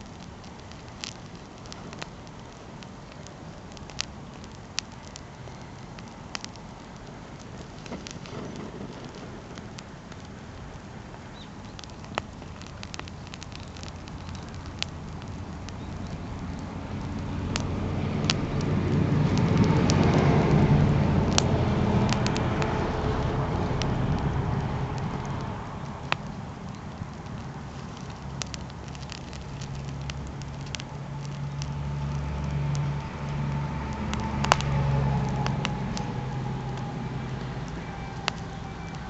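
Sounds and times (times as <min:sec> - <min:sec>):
campfire crackling: 0:00.0 - 0:39.0
fire popping: 0:00.0 - 0:39.0
low rumble: 0:12.6 - 0:39.0.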